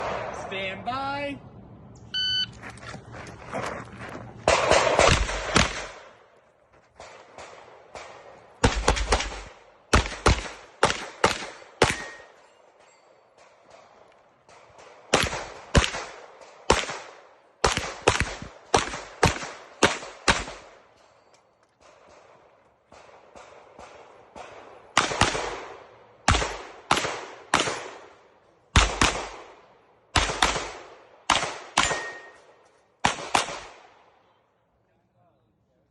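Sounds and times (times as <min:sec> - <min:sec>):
airsoft pistol shots: 0:04.5 - 0:06.0.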